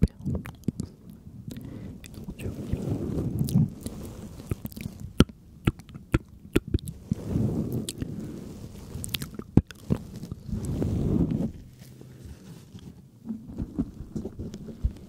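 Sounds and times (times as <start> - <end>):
wet mouth clicks and smacks: 0.0 - 2.3, 4.5 - 7.0
muffled squishing: 0.0 - 15.0.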